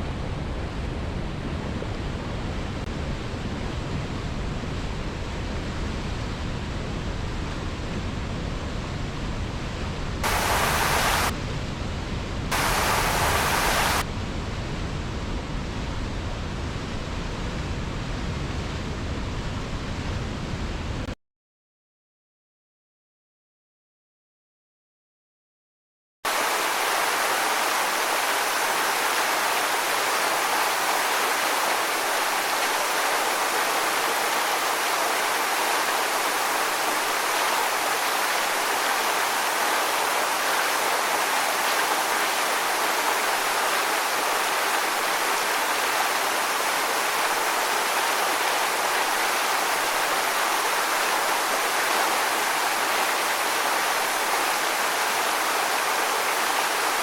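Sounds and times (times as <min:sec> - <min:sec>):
waterfall rushing: 0:10.2 - 0:11.3, 0:12.5 - 0:14.0, 0:26.3 - 0:57.0.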